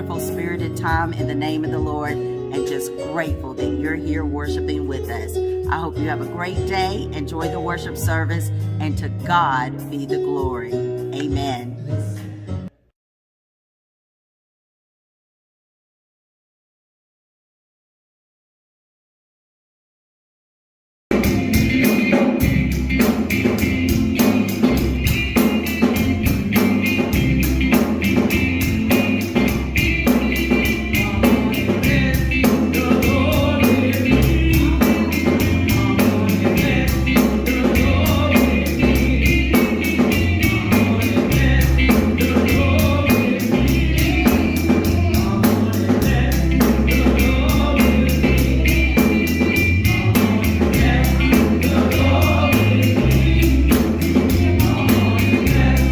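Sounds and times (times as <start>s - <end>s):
steady drum beat: 21.1s - 55.9s
choir singing: 28.9s - 55.9s.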